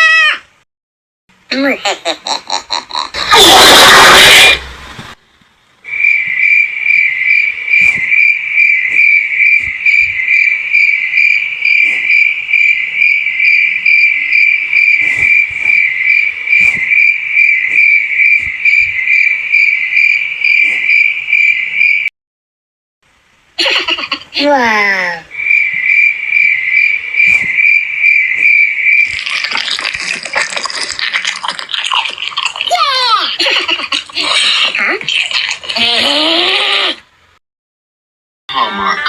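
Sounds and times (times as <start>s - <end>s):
cricket chirping: 5.9s - 22.1s, 25.3s - 30.9s.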